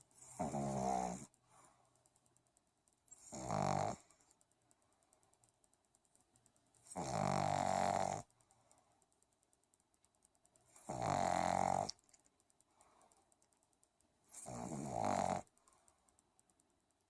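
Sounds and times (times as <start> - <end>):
dog snoring: 0.2 - 1.4, 3.1 - 4.1, 6.9 - 8.3, 10.8 - 12.0, 14.3 - 15.5.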